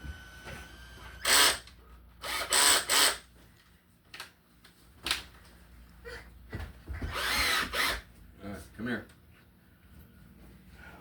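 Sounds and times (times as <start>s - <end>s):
electric drill bursts: 0.0s - 3.2s, 7.1s - 8.0s.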